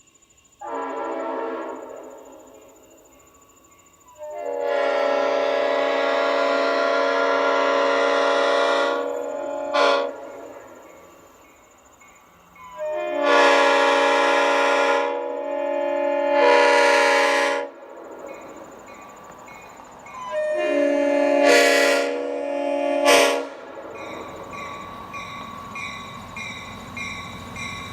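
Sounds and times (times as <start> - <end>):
locomotive air horn blasts: 0.6 - 2.2, 4.2 - 10.8, 12.8 - 17.8, 20.3 - 23.7.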